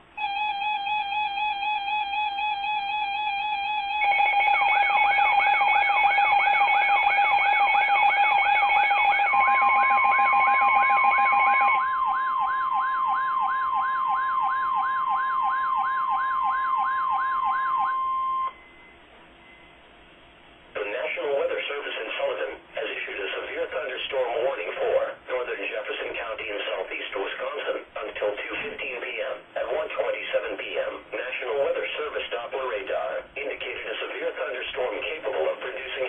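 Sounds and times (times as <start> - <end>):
warbling alarm tone: 0.0 - 19.7
steady warning alarm tone: 0.0 - 20.0
repeating upward sweep tone: 0.2 - 18.6.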